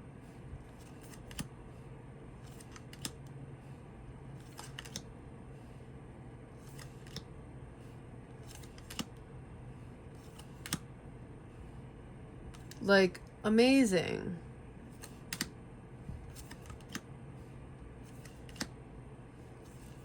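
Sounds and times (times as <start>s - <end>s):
faint steady hum: 0.0s - 20.0s
cards clicking and snapping: 0.8s - 1.5s, 2.4s - 3.2s, 4.4s - 5.1s, 6.6s - 7.3s, 8.4s - 9.2s, 10.2s - 10.8s, 12.5s - 12.8s, 15.0s - 15.6s, 16.3s - 17.1s, 18.1s - 18.8s.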